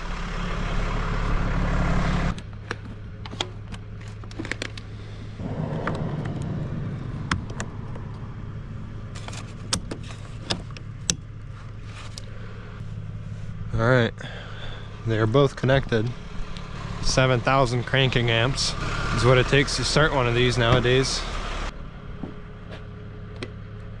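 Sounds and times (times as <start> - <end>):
car engine idling: 0.0 - 24.0
loud rushing noise: 5.4 - 9.1.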